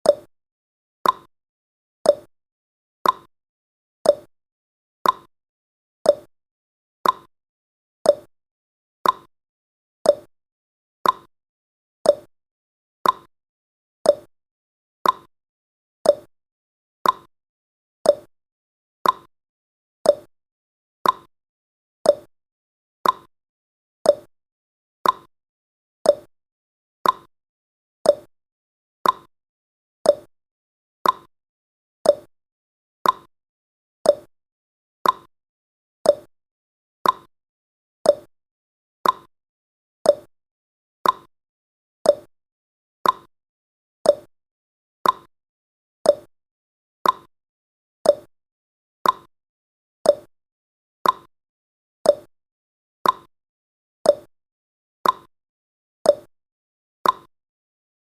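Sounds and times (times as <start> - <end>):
countdown timer ticking: 30.1 - 30.3, 34.1 - 34.3, 36.1 - 36.3, 38.1 - 38.3, 40.1 - 40.3, 42.1 - 42.3, 44.1 - 44.3, 46.1 - 46.3, 48.1 - 48.3, 50.1 - 50.3.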